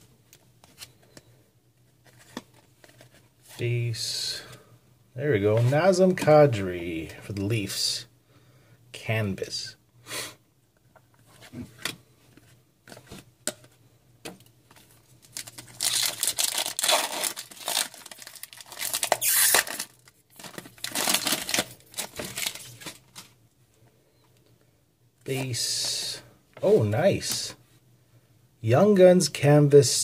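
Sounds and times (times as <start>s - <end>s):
wrapper tearing and crinkling: 15.2s - 23.3s.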